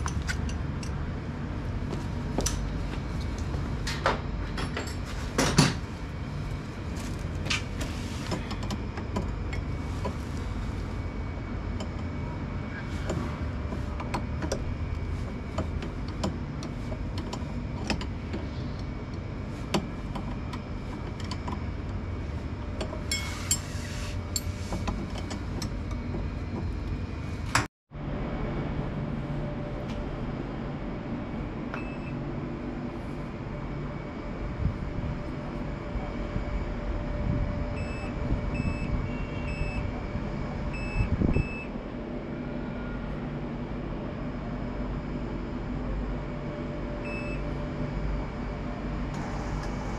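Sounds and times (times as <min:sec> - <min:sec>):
washing machine running: 0:00.0 - 0:49.9.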